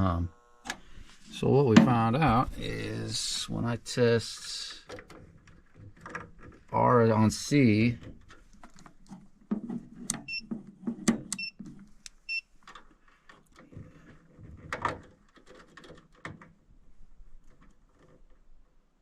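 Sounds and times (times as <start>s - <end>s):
clicks and knocks of hands working: 12.0s - 16.7s.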